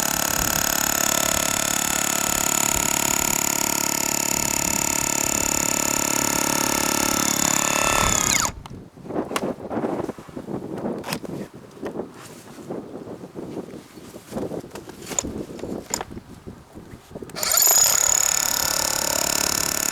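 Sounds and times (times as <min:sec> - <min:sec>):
motor winding down whine: 0:00.0 - 0:08.7, 0:17.4 - 0:19.9
rotary hammer drill running: 0:00.0 - 0:08.7, 0:17.4 - 0:19.9.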